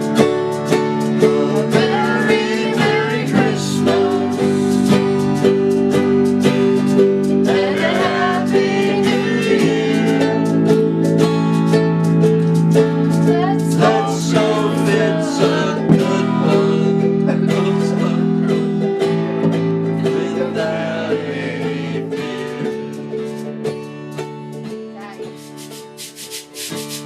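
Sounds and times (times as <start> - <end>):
person singing: 0.0 - 5.5, 7.4 - 11.1, 13.1 - 23.4
strummed acoustic guitar: 0.0 - 27.0.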